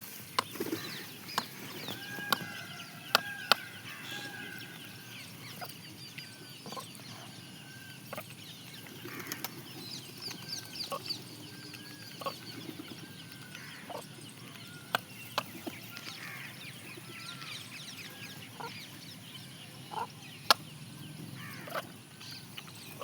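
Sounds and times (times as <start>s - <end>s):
small birds chirping: 0.1s - 23.0s
peahen clucking: 0.3s - 8.3s, 10.3s - 16.5s, 18.1s - 19.0s, 19.7s - 20.6s.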